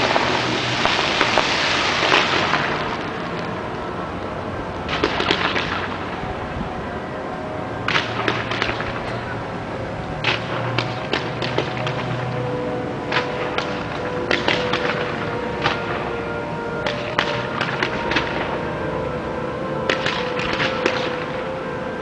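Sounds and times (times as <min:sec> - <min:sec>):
fireworks bangs and crackling: 0:00.0 - 0:03.5, 0:04.9 - 0:06.0
steady background hiss: 0:00.0 - 0:22.0.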